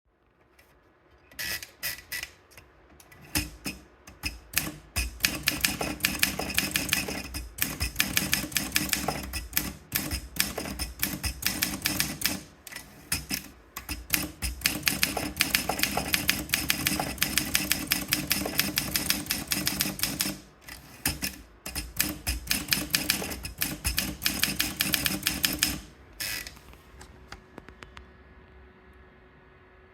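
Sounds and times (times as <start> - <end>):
typewriter typing: 3.3 - 25.9.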